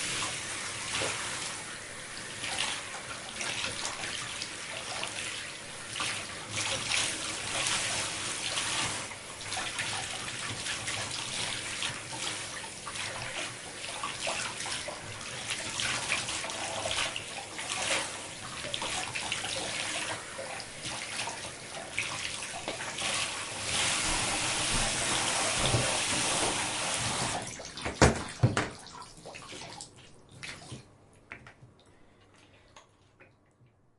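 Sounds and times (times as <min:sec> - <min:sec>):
shower spray splashing on hair: 0:23.2 - 0:27.4.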